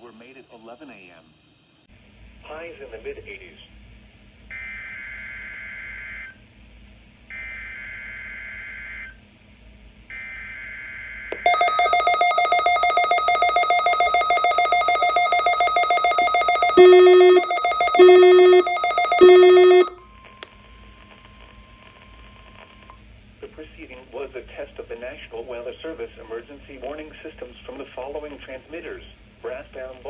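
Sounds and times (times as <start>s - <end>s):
short low beeps: 11.4s - 20.0s
warbling digital data tones: 11.5s - 19.9s
fluttering electronic alert tone: 11.5s - 20.0s.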